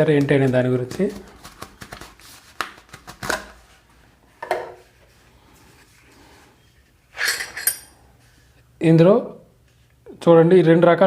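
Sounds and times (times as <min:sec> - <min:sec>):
metal tools clattering: 0:07.1 - 0:08.0.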